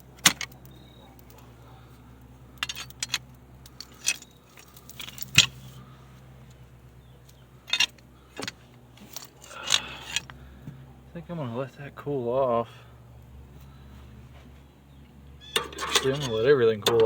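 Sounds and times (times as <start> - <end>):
metal tools clinking: 2.6 - 5.8, 7.6 - 10.3, 15.5 - 17.0.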